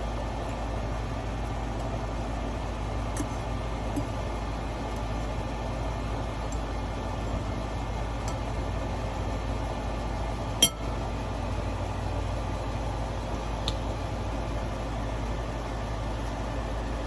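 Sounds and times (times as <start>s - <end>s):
low room hum: 0.0s - 17.0s
tableware clinking: 10.6s - 10.9s.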